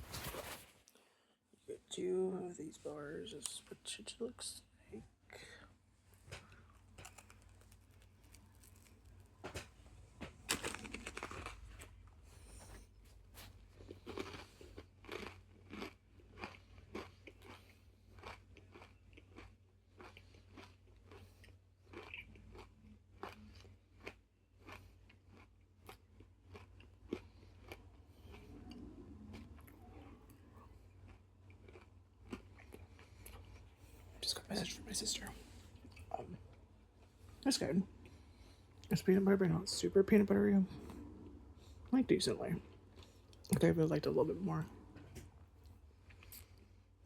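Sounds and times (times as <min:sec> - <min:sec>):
crunchy granola bar chewing: 0:06.4 - 0:34.0.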